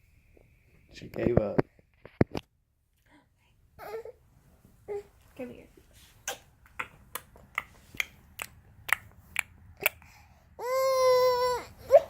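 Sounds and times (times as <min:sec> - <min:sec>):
baby tongue clicks: 0:06.2 - 0:10.1
baby vocal sound: 0:06.2 - 0:12.0.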